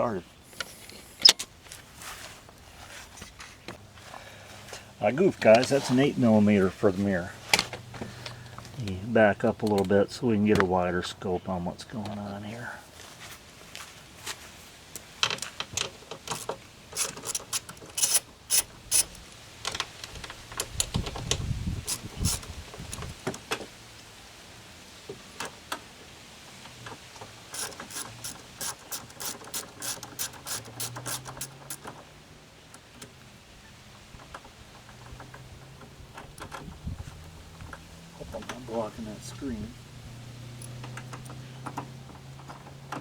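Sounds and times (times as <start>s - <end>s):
ratchet wrench clicking: 16.4s - 19.1s, 27.5s - 31.9s.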